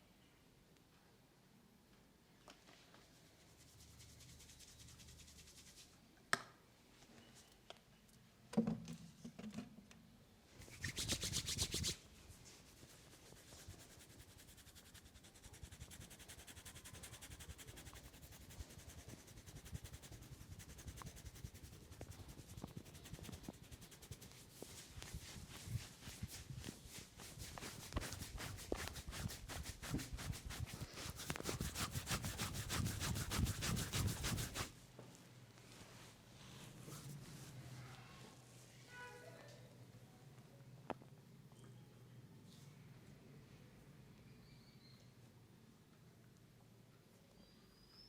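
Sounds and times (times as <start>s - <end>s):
hands rubbing hair and scalp: 10.6s - 34.7s.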